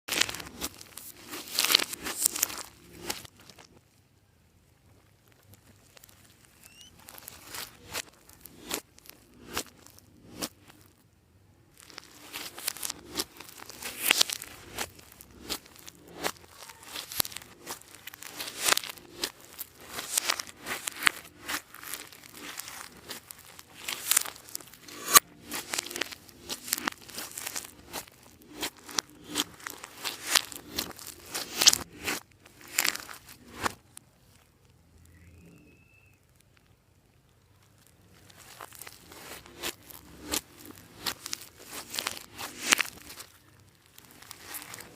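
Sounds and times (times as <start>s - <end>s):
slime squished by hand: 0.1s - 3.8s, 11.8s - 34.4s, 37.7s - 44.9s
slime crackling and popping: 0.1s - 4.0s, 4.8s - 11.1s, 11.7s - 44.9s.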